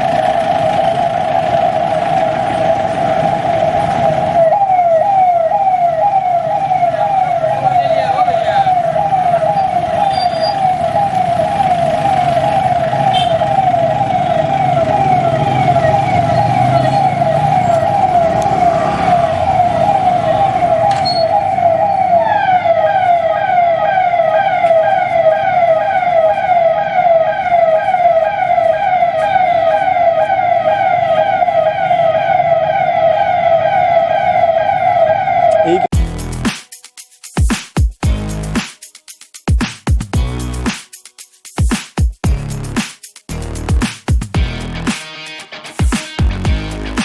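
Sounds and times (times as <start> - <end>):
brighter siren: 0.0 - 36.0
police sirens wailing: 0.0 - 36.0
engine and traffic rumble: 0.0 - 36.5, 38.1 - 38.6, 40.1 - 40.7, 42.3 - 44.9, 46.2 - 47.0.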